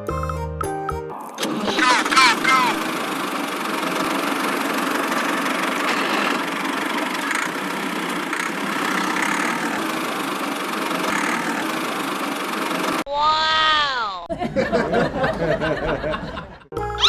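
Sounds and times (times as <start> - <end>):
small motor running: 1.4 - 13.0.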